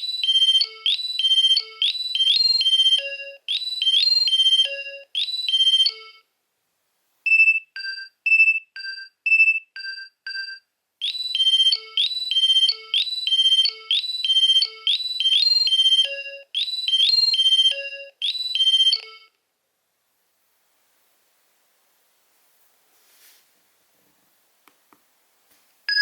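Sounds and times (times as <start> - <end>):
mobile phone ringtone melody: 0.0 - 6.2, 9.9 - 19.3.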